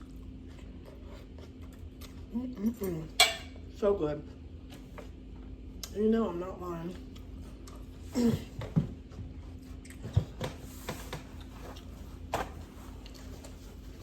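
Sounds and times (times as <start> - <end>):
person chewing food: 0.0 - 3.0, 7.0 - 8.1, 8.9 - 12.3, 12.9 - 14.0.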